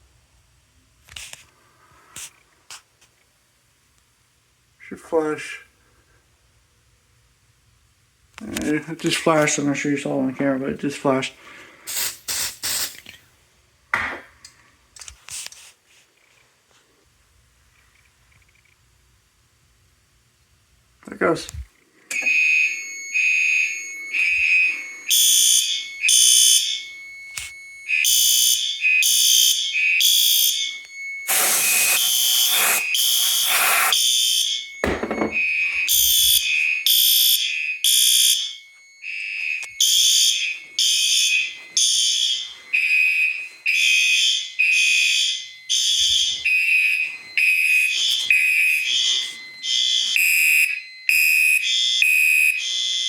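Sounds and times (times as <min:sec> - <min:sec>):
fire alarm horns pulsing: 0:22.1 - 0:53.0
loud burst of noise: 0:31.2 - 0:34.0.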